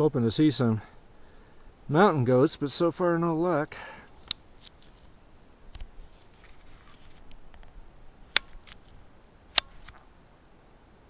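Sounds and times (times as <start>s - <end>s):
sharp clicks: 8.3s - 10.0s.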